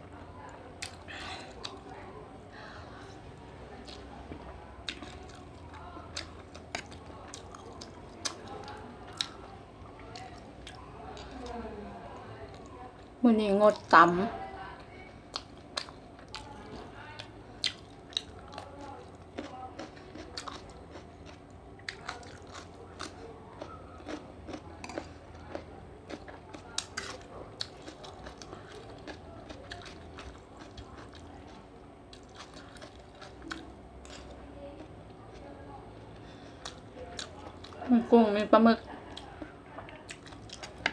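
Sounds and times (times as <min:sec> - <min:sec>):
chewing: 0:00.1 - 0:14.0, 0:14.6 - 0:40.9.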